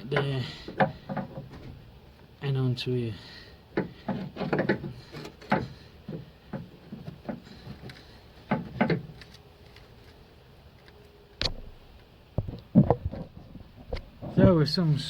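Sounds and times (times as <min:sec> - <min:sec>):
metal knocks and clunks: 0:00.0 - 0:02.0, 0:03.8 - 0:09.1, 0:12.4 - 0:14.6.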